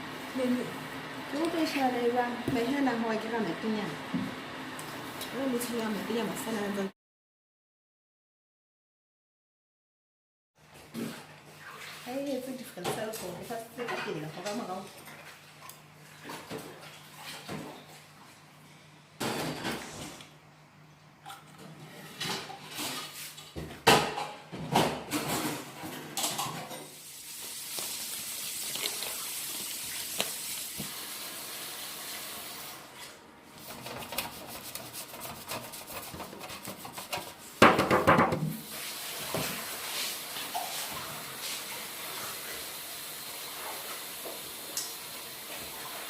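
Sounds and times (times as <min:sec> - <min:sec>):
dishes and utensils clattering: 0:19.2 - 0:20.0, 0:21.3 - 0:27.0.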